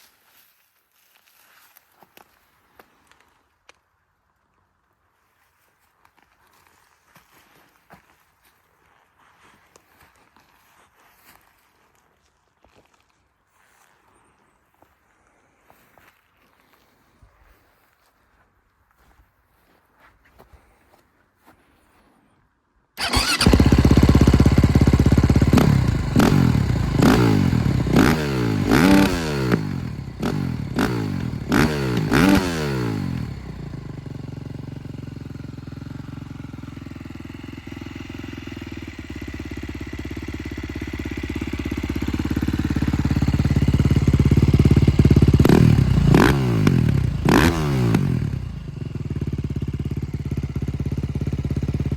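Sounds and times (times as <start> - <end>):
motocross bike engine revving: 23.0 - 51.9
motorcycle engine idling: 23.0 - 51.9.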